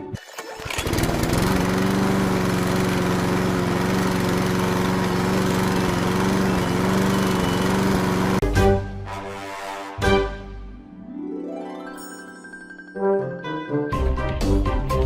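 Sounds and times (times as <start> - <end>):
small motor humming: 0.6 - 8.4.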